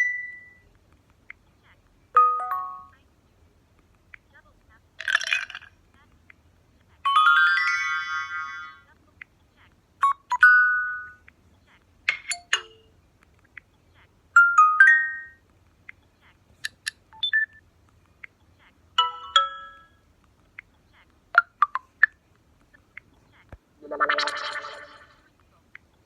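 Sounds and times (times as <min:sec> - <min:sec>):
smartphone notification chimes: 0:02.2 - 0:03.0, 0:07.1 - 0:08.8, 0:19.0 - 0:20.0.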